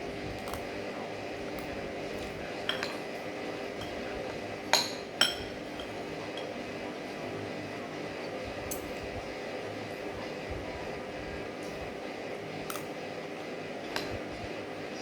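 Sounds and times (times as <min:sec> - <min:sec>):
cutlery clinking on a plate: 0:01.6 - 0:06.6.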